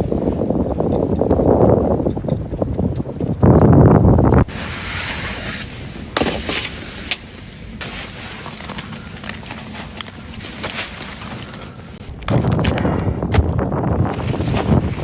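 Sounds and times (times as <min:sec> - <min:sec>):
wind buffeting microphone: 0:00.0 - 0:15.0
steady hiss: 0:04.5 - 0:12.1
small clicks and crackles: 0:05.1 - 0:12.9.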